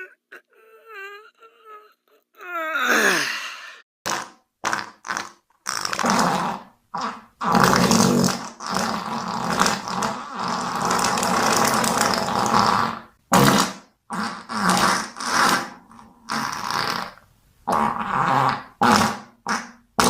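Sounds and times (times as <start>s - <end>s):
farting: 4.1s - 20.0s.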